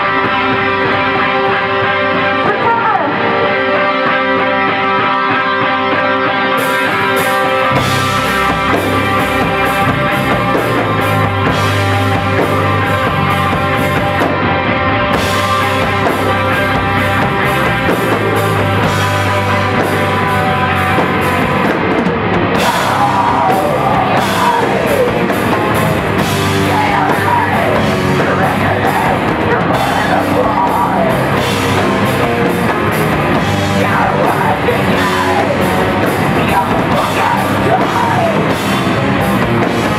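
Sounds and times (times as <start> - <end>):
bass guitar: 0.0 - 39.9
distorted electric guitar: 0.0 - 39.9
person yelling vocals: 2.4 - 3.2, 22.6 - 25.3, 26.6 - 31.4, 33.7 - 38.5
pounding drum kit: 6.6 - 39.9.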